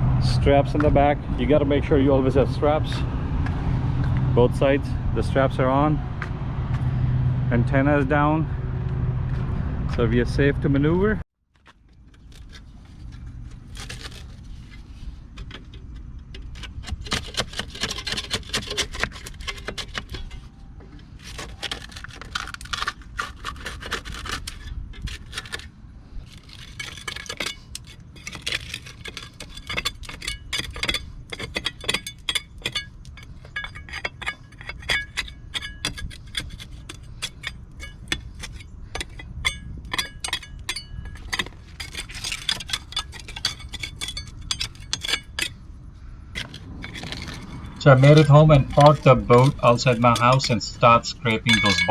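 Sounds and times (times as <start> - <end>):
low rumble: 0.0 - 10.8, 43.0 - 51.9
metallic jangling and clinking: 26.7 - 45.6, 46.4 - 51.9.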